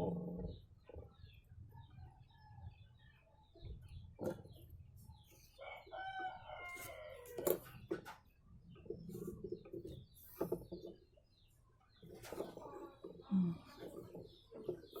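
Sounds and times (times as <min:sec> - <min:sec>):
rooster crowing: 0:05.6 - 0:07.4.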